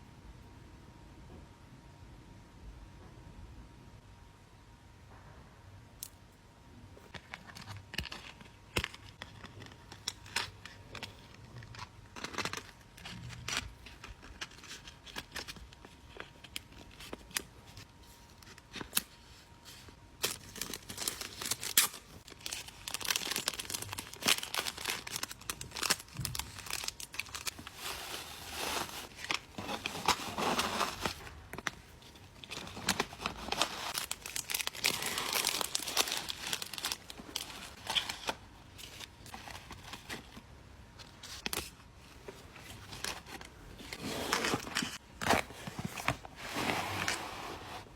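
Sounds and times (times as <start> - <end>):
paper or plastic wrapping crinkling: 7.3 - 40.4.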